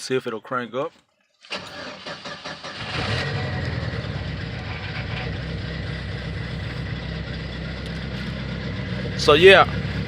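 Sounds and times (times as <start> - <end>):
truck engine idling: 3.0 - 10.0.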